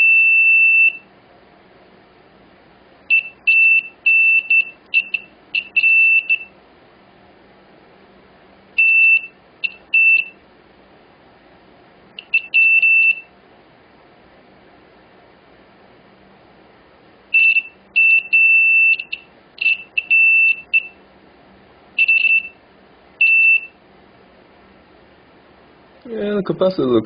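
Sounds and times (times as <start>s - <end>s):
multimeter beeps: 0.0s - 1.1s, 3.1s - 6.5s, 8.8s - 10.4s, 12.2s - 13.3s, 17.3s - 21.0s, 22.0s - 22.6s, 23.2s - 23.8s.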